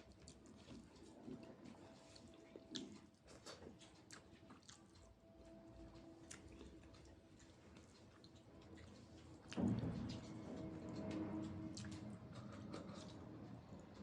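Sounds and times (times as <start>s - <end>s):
person chewing food: 0.0s - 14.0s.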